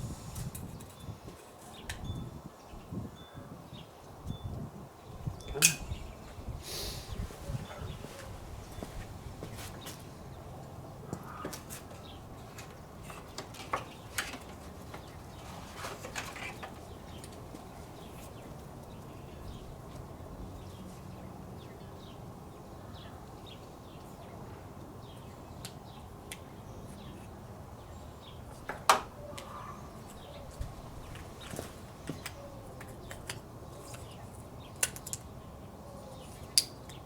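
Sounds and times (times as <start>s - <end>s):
wind buffeting microphone: 0.0s - 10.5s.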